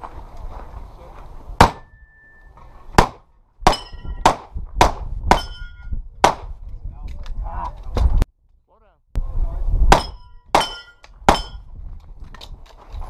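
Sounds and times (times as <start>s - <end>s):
metallic ring of steel targets: 3.7s - 4.3s, 5.3s - 5.9s, 10.0s - 11.7s.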